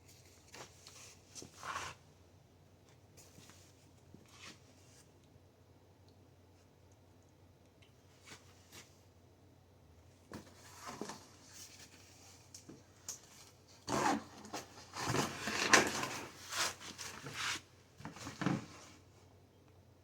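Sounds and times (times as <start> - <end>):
rubbing and rustling: 10.3 - 19.1.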